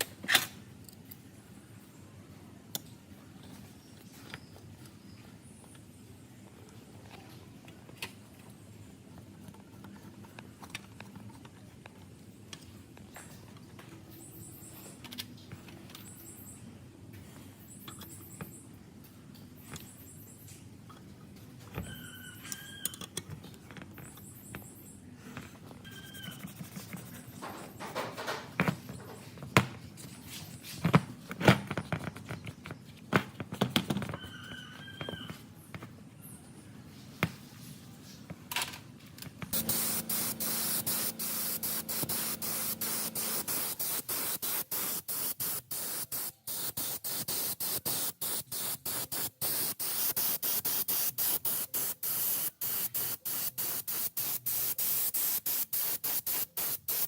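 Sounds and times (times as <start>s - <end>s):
short squeak: 21.8s - 23.0s, 25.8s - 26.6s
pressurised spray hissing: 39.6s - 57.0s.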